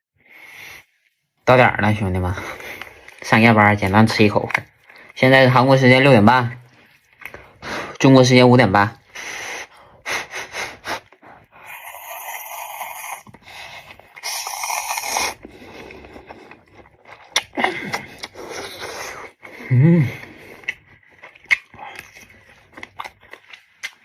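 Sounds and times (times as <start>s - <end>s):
chewing sounds: 6.4s - 8.0s, 10.8s - 24.0s
person slurping noodles: 9.2s - 20.9s.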